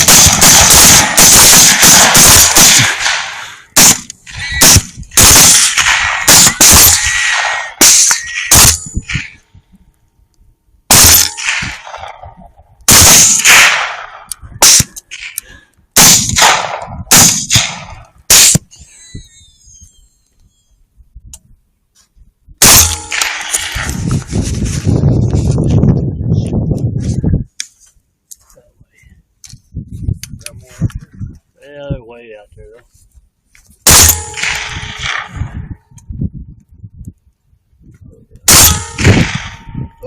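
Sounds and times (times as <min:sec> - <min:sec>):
rifles firing: 0:00.0 - 0:09.2, 0:10.9 - 0:12.3, 0:12.9 - 0:15.4, 0:16.0 - 0:18.6, 0:22.6 - 0:24.0, 0:33.9 - 0:35.4, 0:38.5 - 0:39.7.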